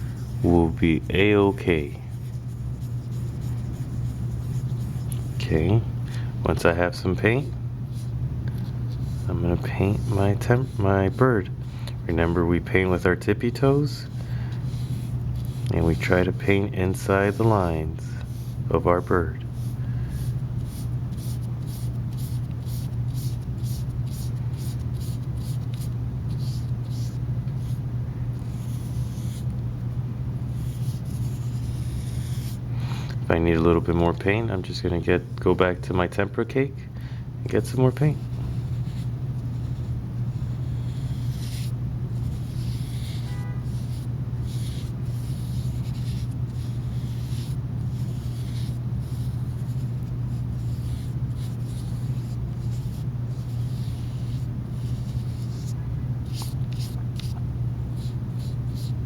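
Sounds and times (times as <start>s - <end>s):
steady low hum: 0.0s - 59.0s
paintbrush swishing on paper: 2.0s - 5.4s, 14.0s - 18.6s, 19.5s - 27.8s, 28.4s - 29.5s, 30.5s - 32.6s, 38.1s - 59.0s.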